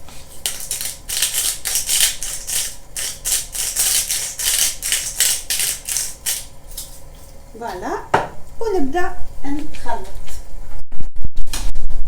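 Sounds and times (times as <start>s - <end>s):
salt shaker rattling: 0.4s - 6.5s.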